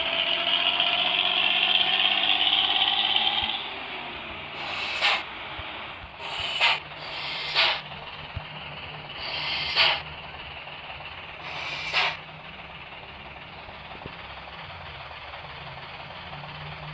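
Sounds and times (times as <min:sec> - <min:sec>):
bus engine idling: 0:00.0 - 0:16.9
short air hisses: 0:04.6 - 0:05.3, 0:06.2 - 0:08.0, 0:09.1 - 0:10.1, 0:11.4 - 0:12.2.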